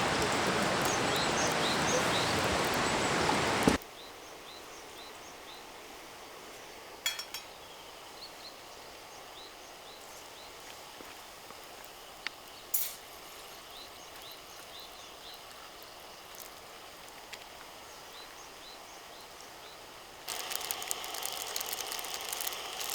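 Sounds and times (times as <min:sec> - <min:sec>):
small birds chirping: 0:00.0 - 0:04.1, 0:17.9 - 0:22.9
faint hiss: 0:00.0 - 0:22.9.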